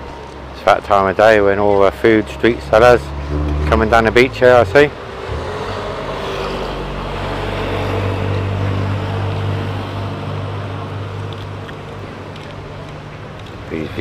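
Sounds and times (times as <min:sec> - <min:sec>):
vehicle engine passing: 0:02.2 - 0:12.0.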